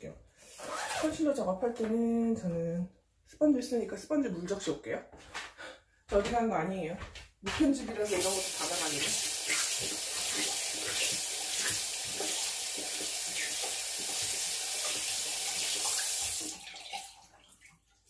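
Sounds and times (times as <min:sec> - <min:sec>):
water running from sink tap: 0:08.0 - 0:18.0.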